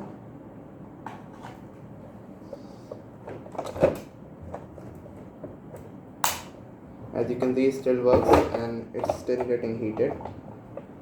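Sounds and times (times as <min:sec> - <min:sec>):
appliance handling clicks and knocks: 0:07.4 - 0:11.0.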